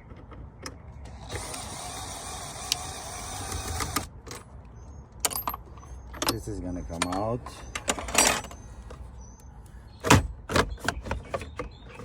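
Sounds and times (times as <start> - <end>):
steady mechanical noise: 0.0 - 4.2.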